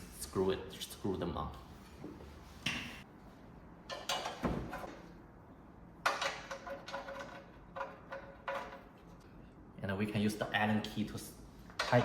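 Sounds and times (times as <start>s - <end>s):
metal clanks and knocks: 6.0s - 8.9s.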